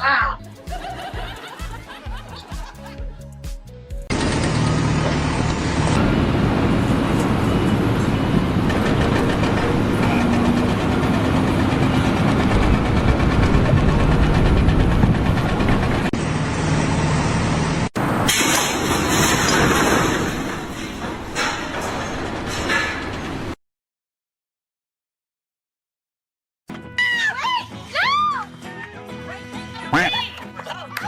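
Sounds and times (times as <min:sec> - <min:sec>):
heavy engine running: 0:04.1 - 0:23.6.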